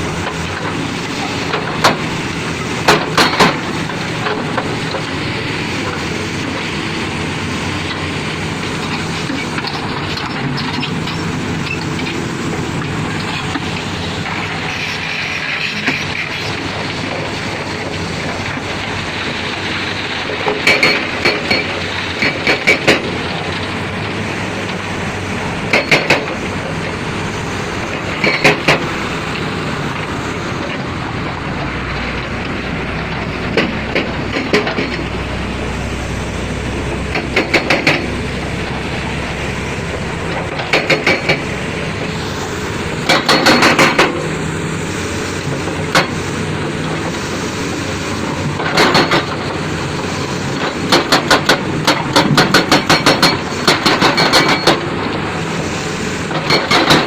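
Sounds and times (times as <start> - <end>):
heavy machinery running: 0.0 - 57.0.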